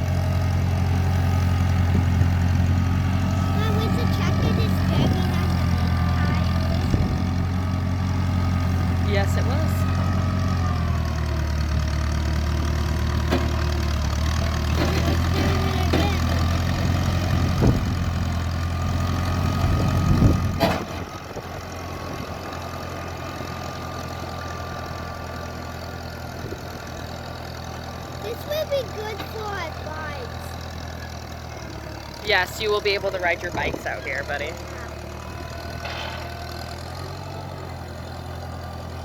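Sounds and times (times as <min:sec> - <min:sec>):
engine running low: 0:00.0 - 0:39.0
loud clatter: 0:35.8 - 0:36.6.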